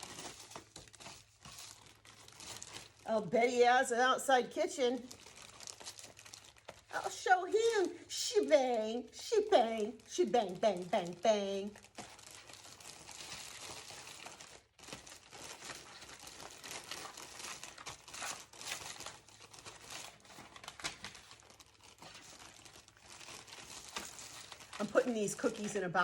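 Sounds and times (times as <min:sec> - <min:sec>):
wrapping material crinkling: 0:00.0 - 0:26.0.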